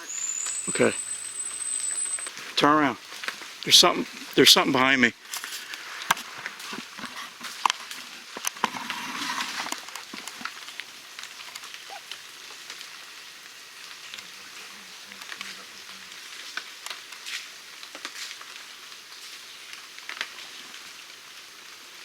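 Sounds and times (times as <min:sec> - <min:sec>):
rain falling on foliage: 0:00.0 - 0:22.0.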